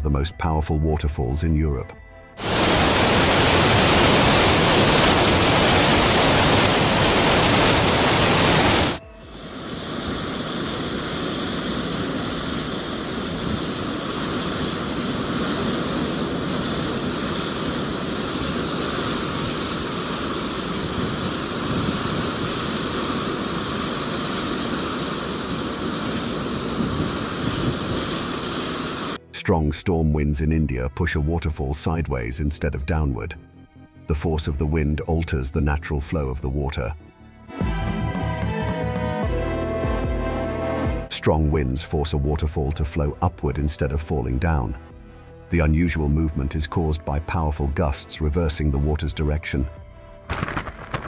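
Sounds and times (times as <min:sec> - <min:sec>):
quieter steady rushing noise: 0:02.4 - 0:29.2, 0:37.6 - 0:51.0
waterfall roaring: 0:02.4 - 0:29.2.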